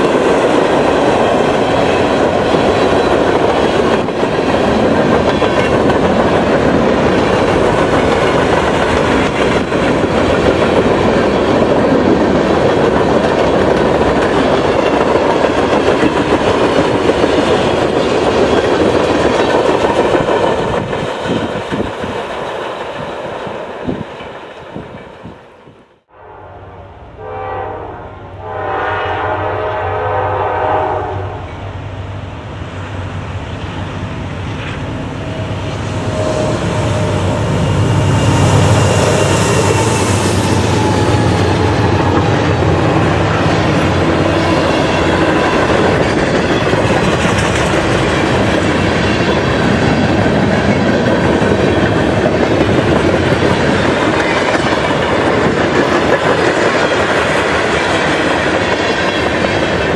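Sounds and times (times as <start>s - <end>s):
train wheel clatter: 0.0s - 25.4s, 36.1s - 59.9s
train air horn blast: 26.1s - 31.5s.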